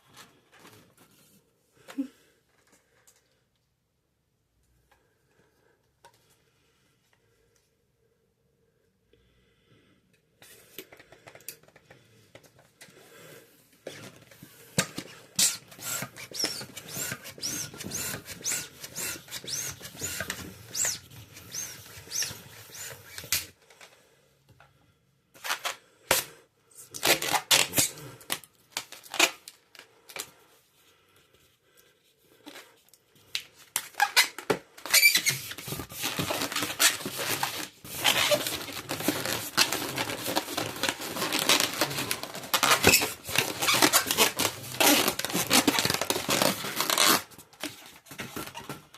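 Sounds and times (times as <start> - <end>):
balloons squeaking and rubbing: 15.0 - 23.5, 26.9 - 28.1, 33.9 - 48.7.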